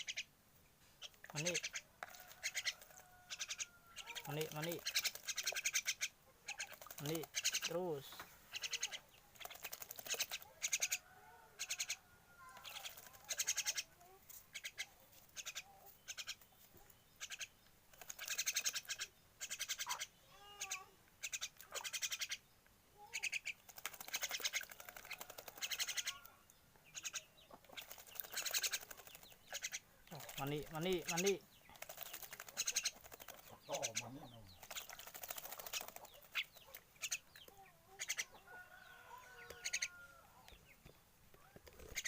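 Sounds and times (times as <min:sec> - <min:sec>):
bird warbling: 0:00.0 - 0:00.3, 0:01.0 - 0:16.4, 0:17.2 - 0:22.4, 0:23.0 - 0:40.3
bird harsh squawks: 0:02.4 - 0:07.8, 0:08.5 - 0:09.0, 0:11.6 - 0:13.9, 0:18.2 - 0:22.4, 0:25.6 - 0:26.3.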